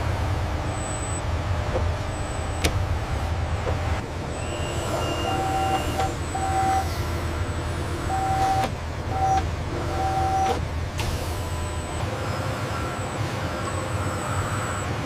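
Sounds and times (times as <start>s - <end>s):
factory machinery hum: 0.0s - 15.0s
electronic beeps: 0.7s - 1.2s, 4.3s - 6.9s, 8.1s - 9.4s.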